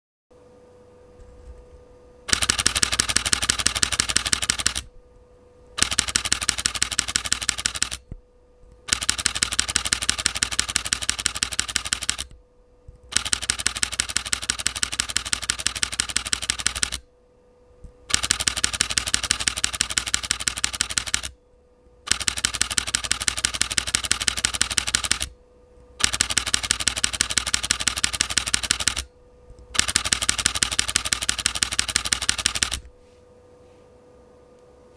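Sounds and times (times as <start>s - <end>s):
camera shutter clicking rapidly: 2.3s - 4.9s, 5.8s - 8.1s, 8.8s - 12.3s, 13.1s - 17.1s, 18.0s - 21.4s, 22.1s - 25.3s, 26.0s - 29.1s, 29.7s - 32.9s.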